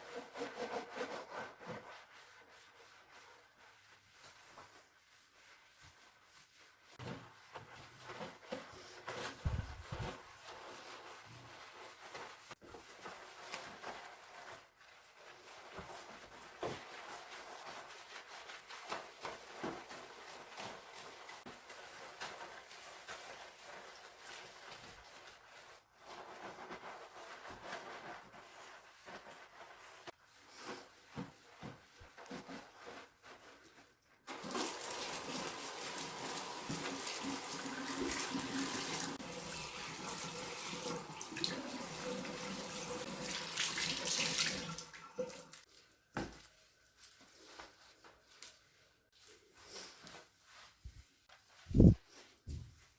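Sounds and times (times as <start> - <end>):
rubbing and handling: 0.0 - 52.9
tap water running: 34.3 - 45.6.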